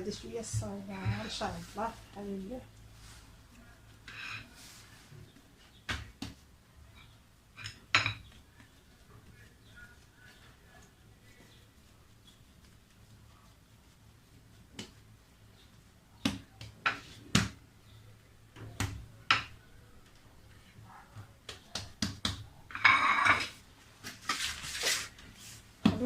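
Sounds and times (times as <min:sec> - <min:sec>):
scraping rustle: 0:22.8 - 0:25.7.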